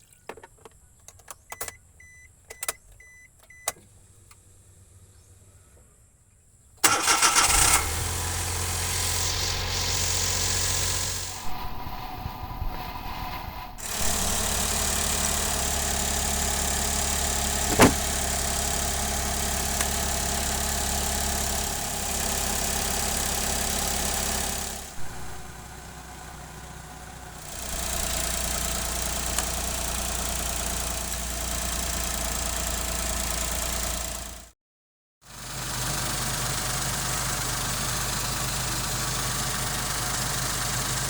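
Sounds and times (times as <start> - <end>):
van engine idling: 6.8 - 11.7, 13.8 - 34.5, 35.5 - 41.0.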